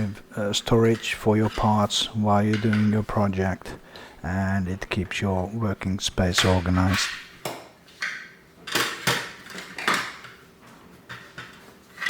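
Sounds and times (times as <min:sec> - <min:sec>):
plastic trays clacking: 0:06.2 - 0:07.2, 0:08.7 - 0:10.4.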